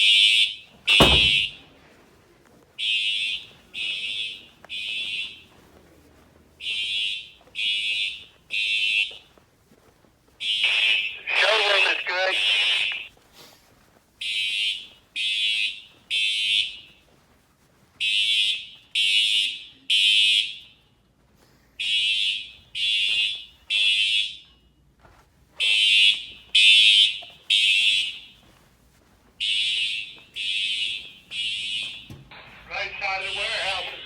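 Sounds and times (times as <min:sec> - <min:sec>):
fire alarm horn blasts: 0:00.0 - 0:01.7, 0:02.8 - 0:05.6, 0:06.6 - 0:09.2, 0:10.4 - 0:13.1, 0:14.2 - 0:17.0, 0:18.0 - 0:20.9, 0:21.8 - 0:24.7, 0:25.6 - 0:28.4, 0:29.4 - 0:34.0.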